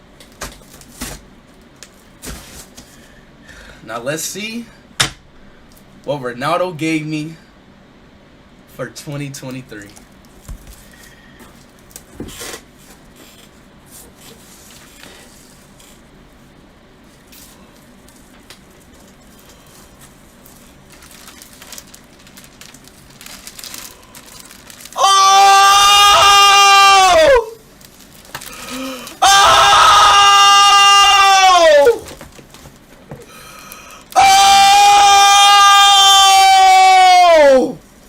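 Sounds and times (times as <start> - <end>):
handling and rustling noises: 0.2 - 3.1, 9.7 - 25.0, 27.6 - 29.2, 31.9 - 33.3
man screaming: 25.0 - 27.6, 28.7 - 32.1, 34.1 - 37.8.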